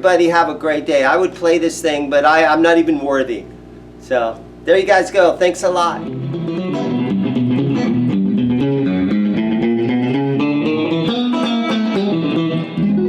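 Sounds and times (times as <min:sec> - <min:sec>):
electric guitar riff: 0:05.6 - 0:13.0.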